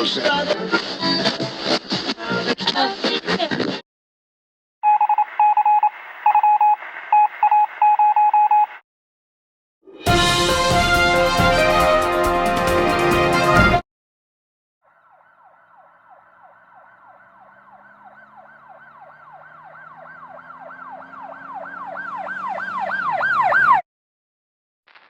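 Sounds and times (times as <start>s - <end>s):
siren sweeping rapidly: 14.8s - 23.8s.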